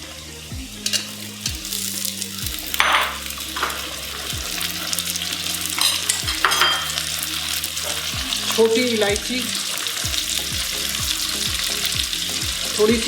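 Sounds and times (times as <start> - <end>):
food sizzling in hot oil: 0.0 - 13.0
spoon scraping a pan: 0.8 - 8.9.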